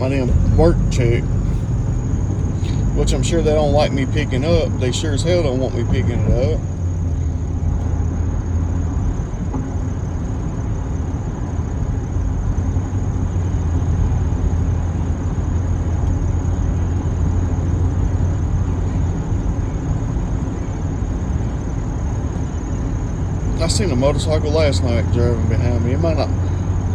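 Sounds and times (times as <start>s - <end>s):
car engine and road noise: 0.0s - 26.9s.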